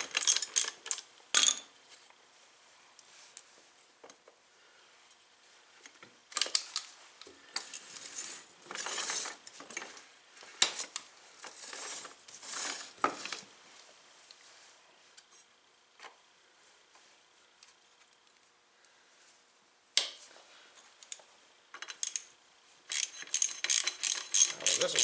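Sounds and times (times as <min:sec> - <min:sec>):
wrench and metal parts clinking: 0:00.0 - 0:01.7, 0:21.8 - 0:22.3, 0:22.9 - 0:25.0
metal rasping: 0:22.9 - 0:25.0.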